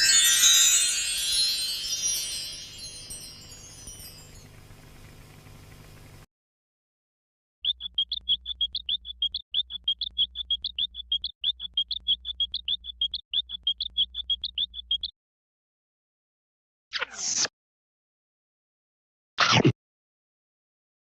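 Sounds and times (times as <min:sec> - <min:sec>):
rapid high-pitched cartoon chirping: 0:07.6 - 0:15.1.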